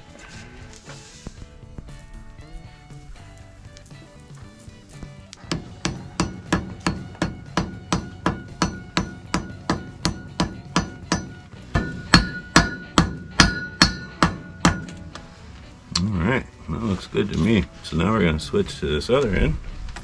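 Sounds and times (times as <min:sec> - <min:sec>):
hammer striking hot steel on anvil: 0:05.4 - 0:15.4.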